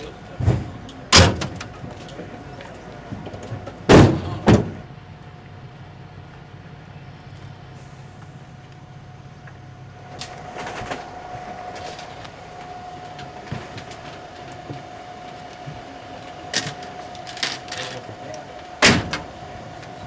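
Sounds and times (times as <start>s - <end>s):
rattles and clicks: 0.0s - 4.8s, 10.1s - 20.0s.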